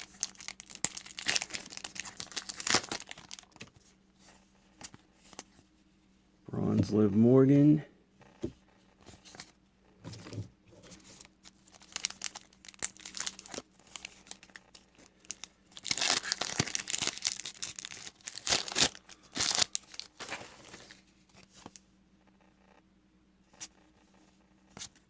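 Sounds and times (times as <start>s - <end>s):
wrapper tearing and crinkling: 0.0s - 3.6s, 11.5s - 21.0s
cards being handled: 10.2s - 21.8s.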